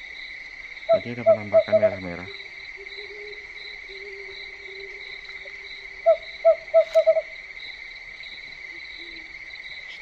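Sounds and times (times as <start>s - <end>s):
crickets chirring: 0.0s - 10.0s
owl hooting: 0.9s - 7.4s, 8.8s - 9.4s.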